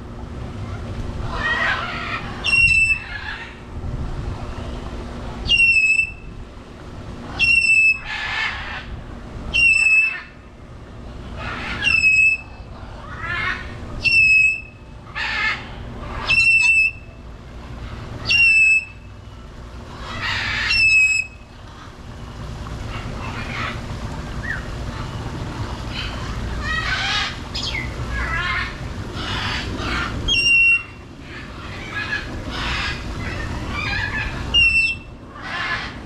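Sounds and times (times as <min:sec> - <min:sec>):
parrot raspy squawks: 0:13.1 - 0:17.0, 0:25.9 - 0:36.0.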